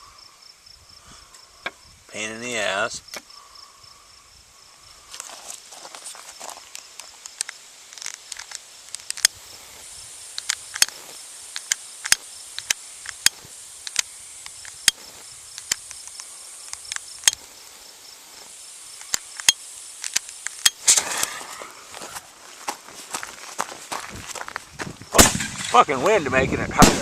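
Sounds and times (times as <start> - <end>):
crickets chirping: 0.0 - 27.0
sharp pops and crackles: 6.3 - 21.4, 24.4 - 27.0.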